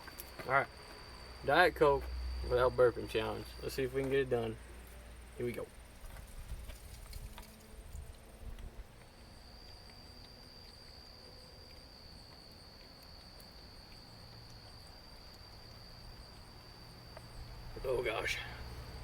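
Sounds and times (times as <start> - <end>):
insect trilling: 0.0 - 4.7, 8.8 - 19.0.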